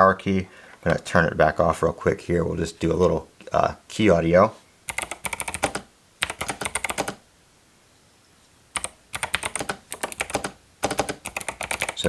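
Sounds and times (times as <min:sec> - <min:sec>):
mechanical keyboard typing: 0:04.9 - 0:07.2, 0:08.8 - 0:12.0.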